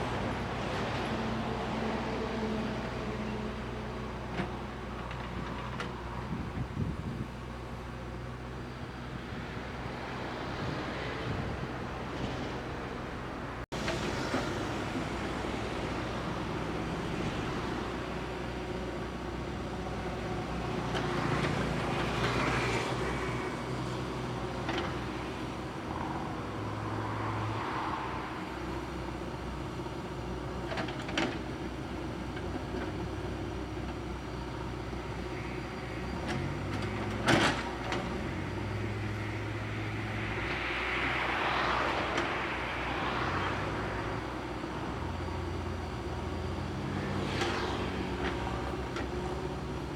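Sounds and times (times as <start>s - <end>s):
diesel engine running under load: 28.4s - 49.9s.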